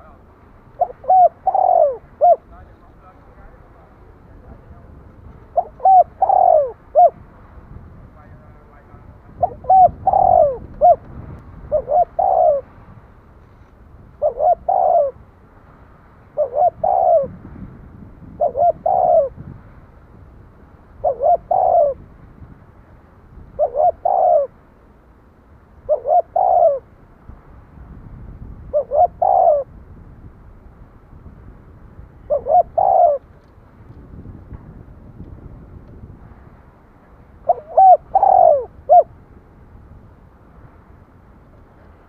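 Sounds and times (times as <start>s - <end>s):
dove cooing: 0.0s - 3.0s, 5.3s - 7.2s, 8.6s - 12.7s, 14.2s - 15.2s, 16.4s - 17.4s, 18.2s - 19.4s, 21.0s - 22.0s, 23.5s - 24.6s, 25.8s - 26.9s, 28.7s - 29.8s, 32.2s - 33.3s, 37.4s - 39.2s.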